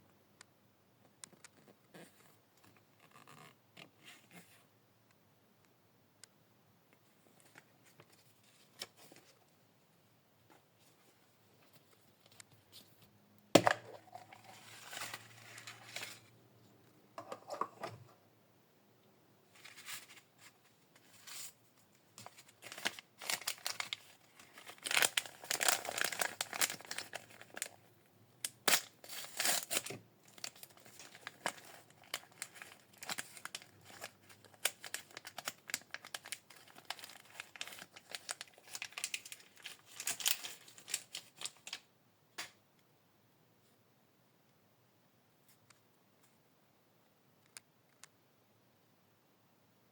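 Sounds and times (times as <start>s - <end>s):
plastic wrappers crinkling: 19.6s - 41.9s.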